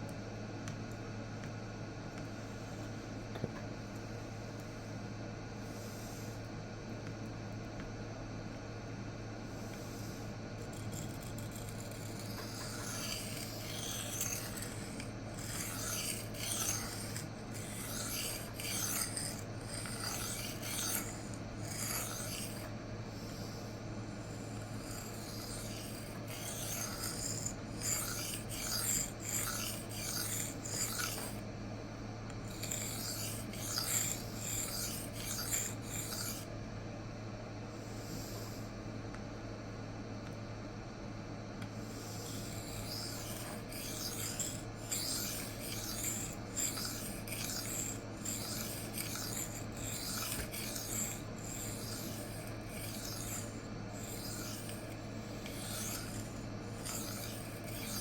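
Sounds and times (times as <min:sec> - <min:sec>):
steady low hum: 0:00.0 - 0:58.0
knife scraping on sharpening plate: 0:10.9 - 0:22.7, 0:24.9 - 0:31.4, 0:42.2 - 0:58.0.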